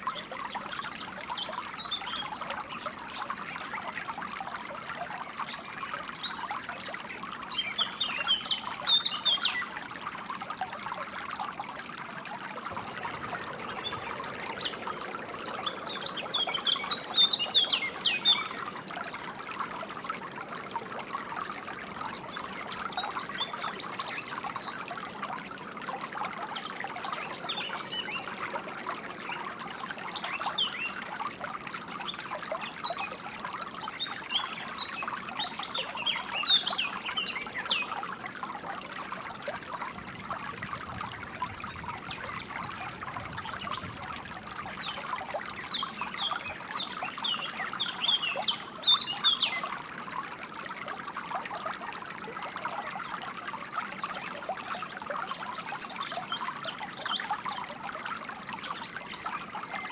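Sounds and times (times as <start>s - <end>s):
water trickling: 0.0s - 59.9s
small birds chirping: 12.7s - 18.7s.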